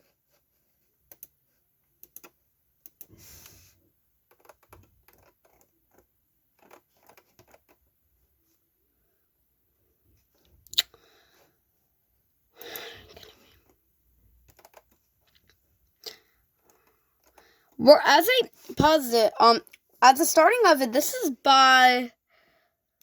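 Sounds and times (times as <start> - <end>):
computer keys clicking: 1.1 - 1.4, 2.0 - 3.1.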